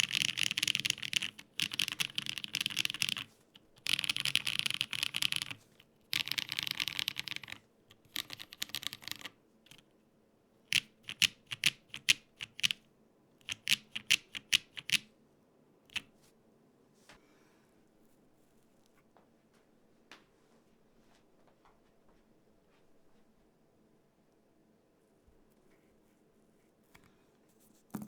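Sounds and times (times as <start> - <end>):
mechanical keyboard typing: 0.0 - 9.8, 10.7 - 12.8, 13.4 - 15.1.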